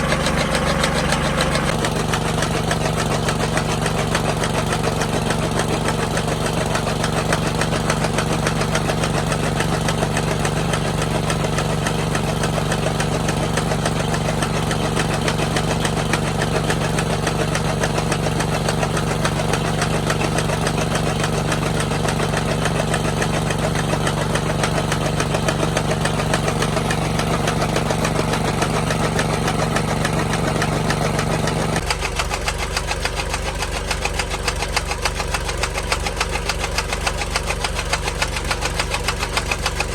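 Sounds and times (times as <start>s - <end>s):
engine running with knocking beat: 0.0s - 39.9s.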